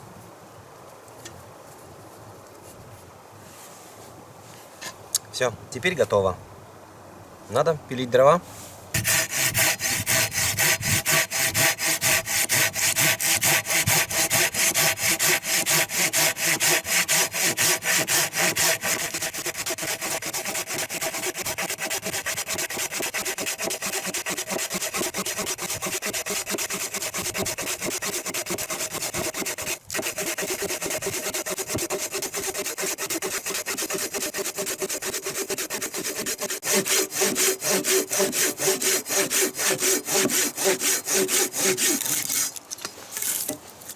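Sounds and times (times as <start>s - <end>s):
hand saw cutting wood: 9.0s - 43.6s.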